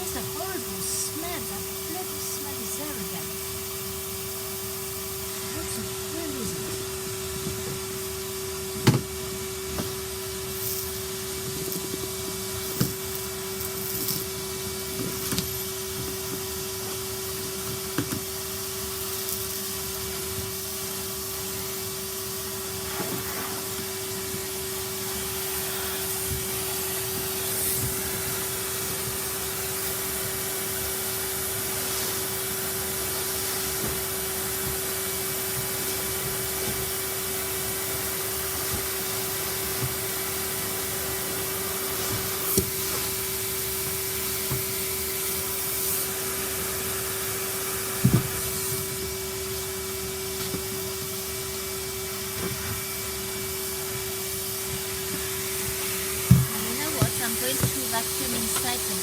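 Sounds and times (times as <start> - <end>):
vacuum cleaner humming: 0.0 - 59.0
vacuum nozzle knocking: 54.7 - 58.9.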